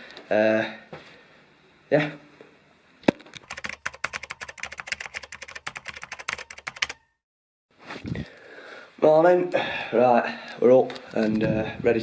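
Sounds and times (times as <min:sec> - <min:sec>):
rapid sharp clicks: 0:03.4 - 0:07.0.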